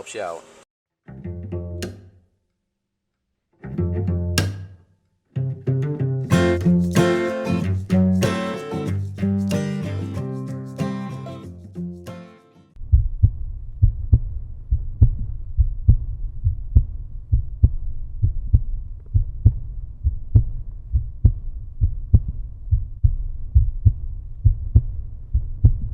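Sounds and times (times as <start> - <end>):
low thumping heartbeat pulse: 12.8 - 25.9.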